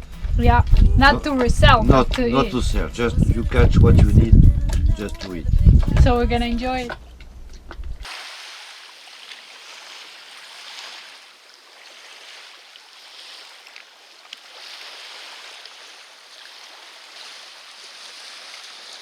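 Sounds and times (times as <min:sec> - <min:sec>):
water washing and splashing: 0:08.0 - 0:19.0.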